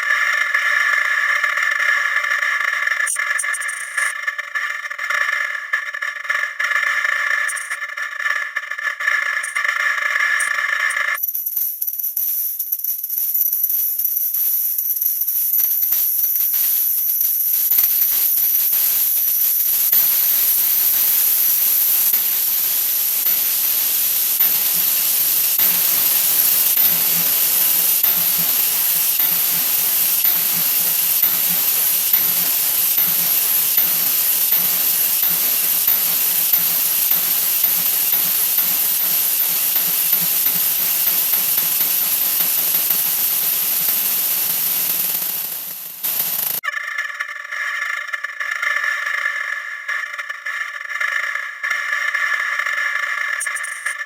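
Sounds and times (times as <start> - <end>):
rapid crackle: 1.0 - 33.3
high-pitched hiss: 3.1 - 4.1, 7.5 - 7.8, 9.4 - 44.6.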